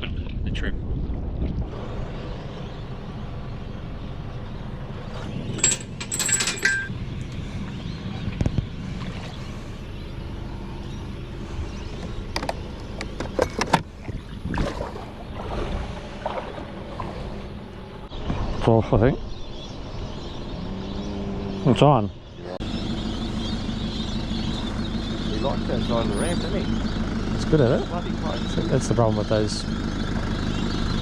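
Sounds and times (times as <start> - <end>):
low rumble: 0.0 - 30.2
metallic clinking and jingling: 5.4 - 6.9.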